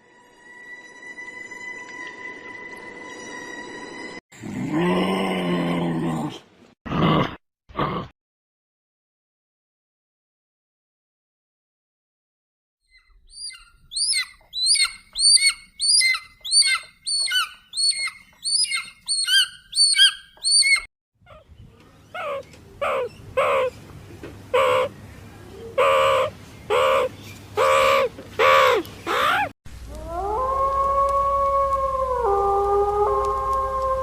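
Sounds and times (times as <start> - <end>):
bird chirping: 12.9 - 23.9.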